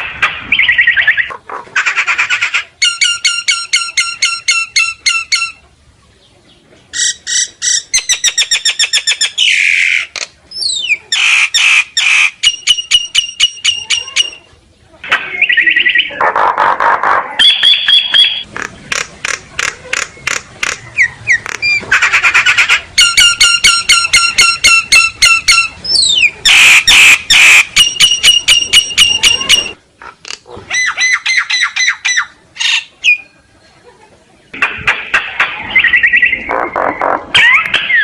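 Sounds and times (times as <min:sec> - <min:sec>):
myna calling: 0:06.9 - 0:33.4.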